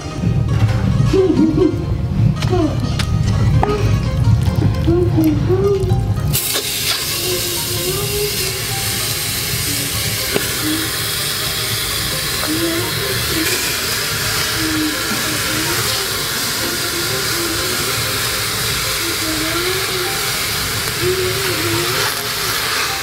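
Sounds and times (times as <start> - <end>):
steam hissing from a pot: 6.3 - 23.0.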